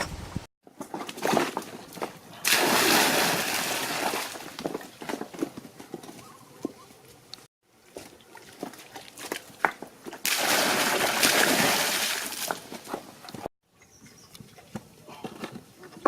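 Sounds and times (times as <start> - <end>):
water splashing and sloshing: 0.2 - 5.5, 7.6 - 13.5
rush of splashing water: 2.4 - 4.6, 10.2 - 12.9.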